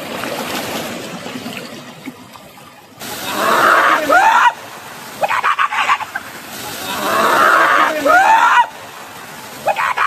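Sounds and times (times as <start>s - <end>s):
waterfall rushing: 3.0s - 10.0s
rising and falling cry: 3.1s - 4.6s, 6.8s - 8.8s.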